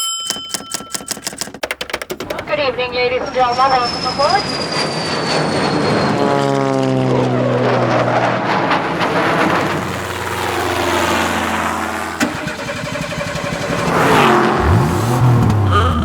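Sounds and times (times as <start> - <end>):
engine humming: 8.8 - 16.0.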